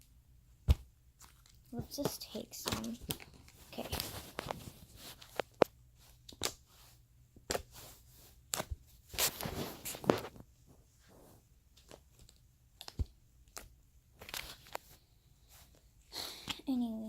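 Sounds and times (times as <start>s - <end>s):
clay rustling: 0.0s - 16.8s
sticky clay clicks and pops: 5.4s - 6.7s, 7.4s - 7.8s, 8.4s - 8.9s, 11.7s - 14.7s.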